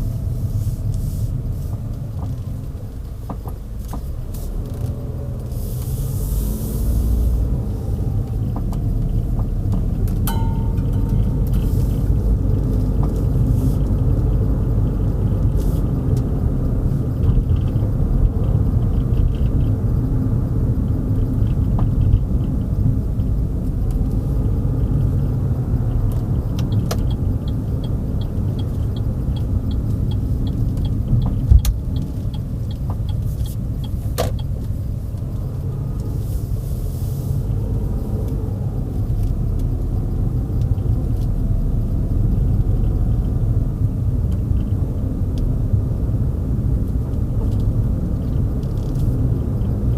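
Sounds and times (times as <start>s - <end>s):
car road and engine rumble: 0.0s - 49.9s
light regular ticks: 25.9s - 36.3s.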